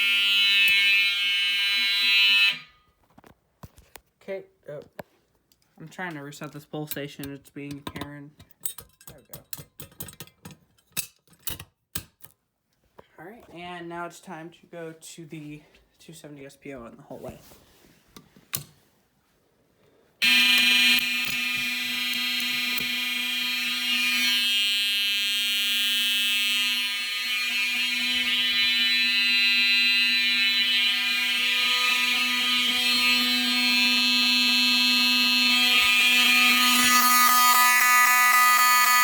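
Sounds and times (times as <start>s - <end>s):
fire alarm horns buzzing: 0.0s - 2.9s, 20.2s - 39.0s.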